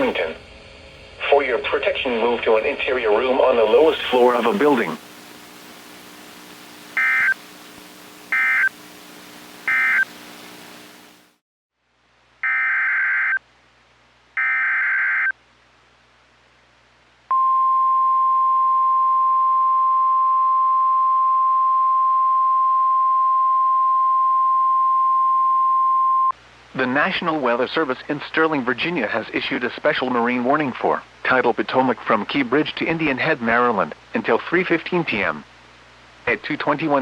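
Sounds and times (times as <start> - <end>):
radio hiss: 0.0 - 0.5, 1.2 - 11.4
steady warning alarm tone: 3.6 - 11.3
buzzy digital data bursts: 3.6 - 11.4.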